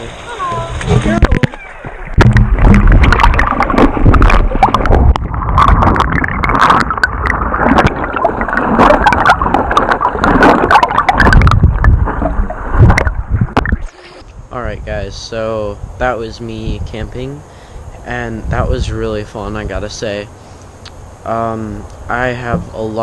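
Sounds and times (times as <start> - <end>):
water splashing and sloshing: 0.0 - 14.2, 22.4 - 23.0
low rumble: 0.7 - 15.2, 22.2 - 23.0.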